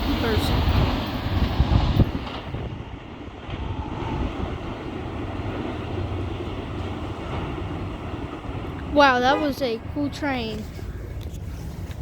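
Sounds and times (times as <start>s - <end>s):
freight train rolling past: 0.0s - 12.0s
wind on microphone: 0.2s - 8.9s.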